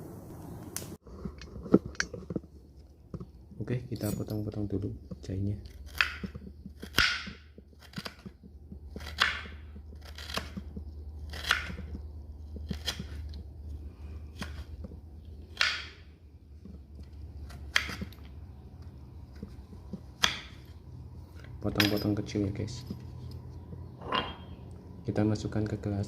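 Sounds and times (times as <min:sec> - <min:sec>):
knife cutting ginger: 0:05.1 - 0:13.4, 0:14.2 - 0:16.0, 0:17.3 - 0:18.6, 0:19.2 - 0:20.7.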